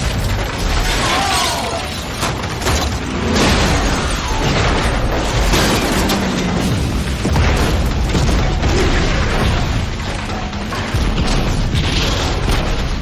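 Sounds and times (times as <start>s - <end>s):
dense loud rumble: 2.1s - 13.0s
explosion booms: 3.2s - 10.2s.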